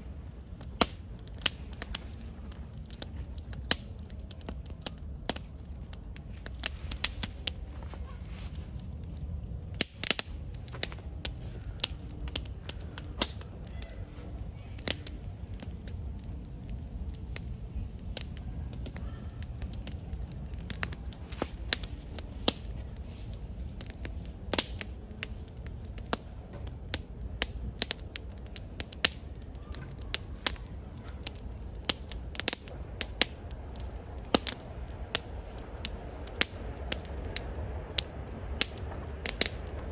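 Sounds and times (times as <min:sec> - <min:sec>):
campfire crackling: 0:00.0 - 0:39.9
low steady rumble: 0:00.0 - 0:39.9.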